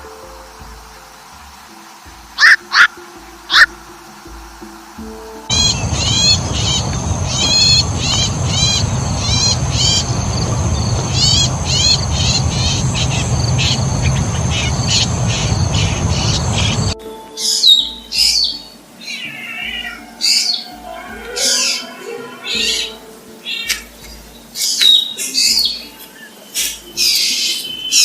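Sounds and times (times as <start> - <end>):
varied animal calls: 2.4 - 3.7
heavy low rumble: 5.5 - 17.0
small bird chirping: 5.5 - 17.0.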